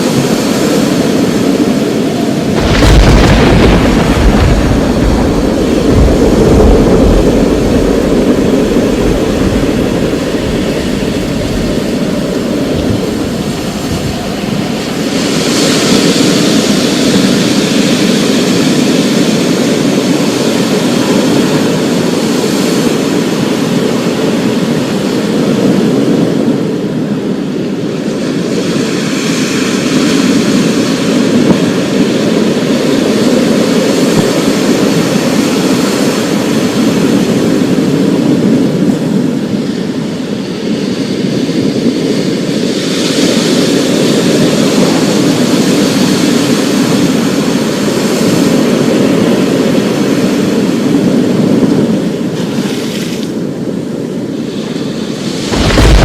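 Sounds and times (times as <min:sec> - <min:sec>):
heavy rain roar: 0:00.0 - 0:24.7, 0:54.4 - 0:56.0.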